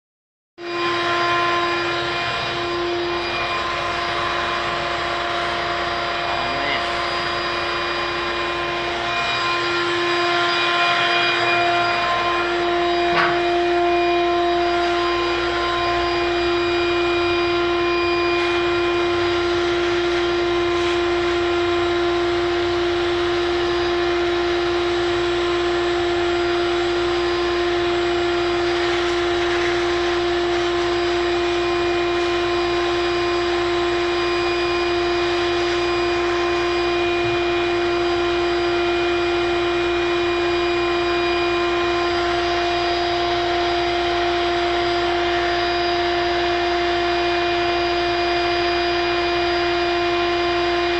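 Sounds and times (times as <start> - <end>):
vacuum motor running: 0.6 - 50.9.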